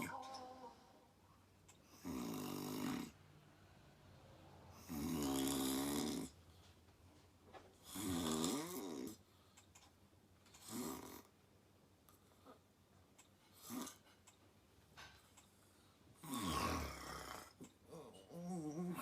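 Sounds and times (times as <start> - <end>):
woman snoring: 2.0 - 3.2, 4.8 - 6.4, 7.8 - 9.2, 16.2 - 19.0.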